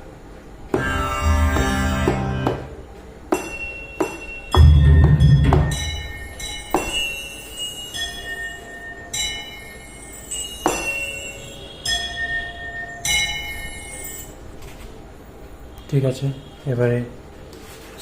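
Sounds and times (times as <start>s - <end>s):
bell-like sampled tones: 3.3s - 14.4s
deep drum hit: 4.6s - 5.8s.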